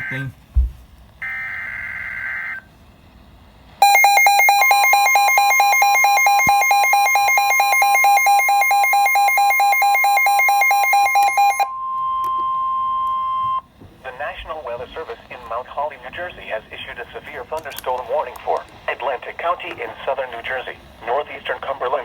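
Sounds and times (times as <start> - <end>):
data tones: 3.8 - 13.6
fast pulsing alarm beep: 3.8 - 13.6
steady high warning tone: 3.8 - 14.2.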